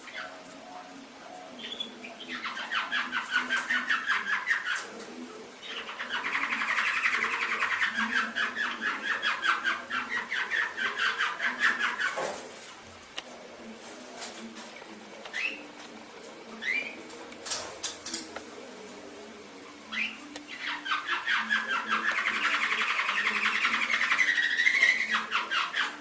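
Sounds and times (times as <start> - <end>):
canary singing trills: 0.0 - 4.9, 5.6 - 12.2, 15.3 - 15.8, 16.6 - 17.2, 19.7 - 26.0.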